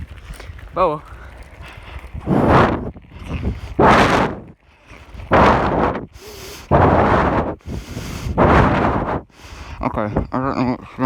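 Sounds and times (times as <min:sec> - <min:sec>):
heavy breathing on microphone: 0:04.8 - 0:10.3.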